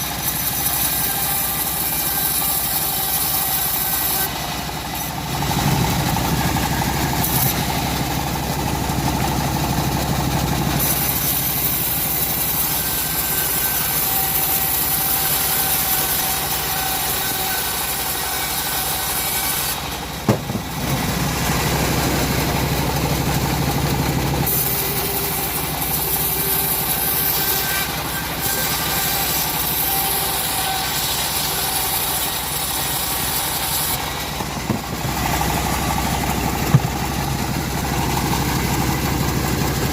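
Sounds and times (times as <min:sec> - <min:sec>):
chainsaw cutting wood: 0:00.0 - 0:39.9
sharp knock: 0:20.2 - 0:21.0.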